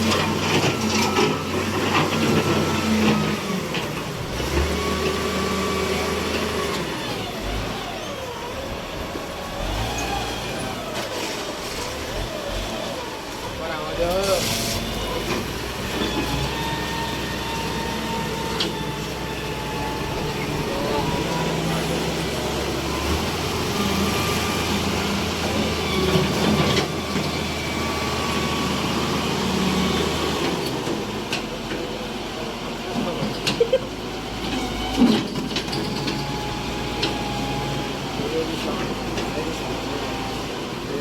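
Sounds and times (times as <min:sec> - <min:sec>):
road-cutting machine engine running: 0:00.0 - 0:41.0.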